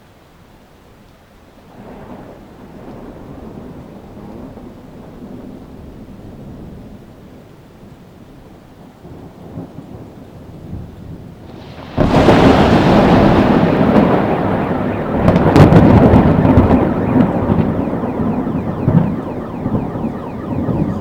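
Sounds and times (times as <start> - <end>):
low thunder rumble: 1.7 - 21.0
loud thunderclap: 10.7 - 21.0
sharp thunder cracks: 11.4 - 21.0.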